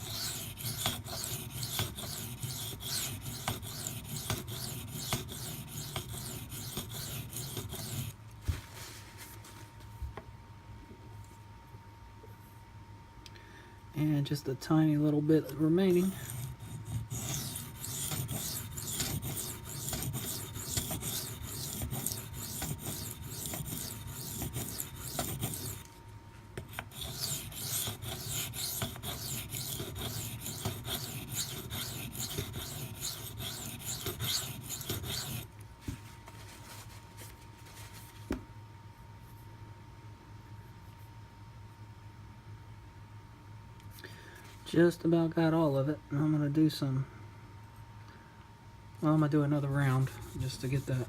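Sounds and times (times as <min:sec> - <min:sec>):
knife blade scraping on whetstone: 0:00.0 - 0:08.1, 0:15.5 - 0:25.9, 0:26.7 - 0:35.5.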